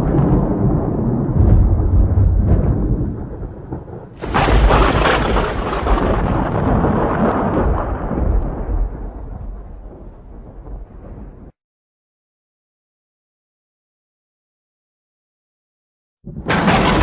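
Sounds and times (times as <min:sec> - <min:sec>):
sharp thunder crack: 0:00.0 - 0:11.5, 0:16.3 - 0:17.0
thunder rumbling: 0:00.0 - 0:11.6, 0:16.3 - 0:17.0.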